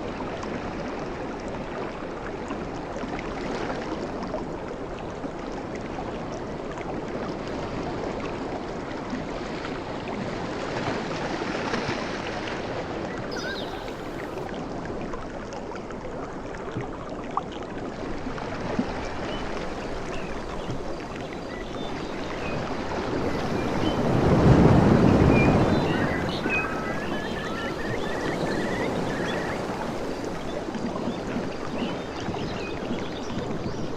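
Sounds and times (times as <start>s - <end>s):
ocean waves on beach: 7.3s - 15.1s, 17.9s - 33.9s.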